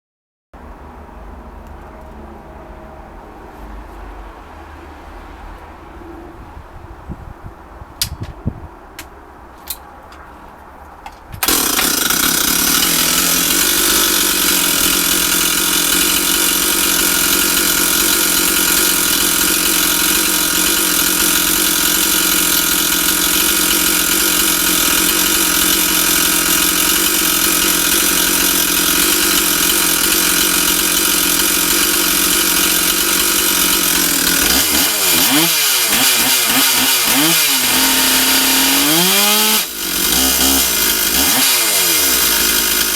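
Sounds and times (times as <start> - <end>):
chainsaw engine running: 11.4 - 42.9
chainsaw throttle blips: 11.4 - 42.9.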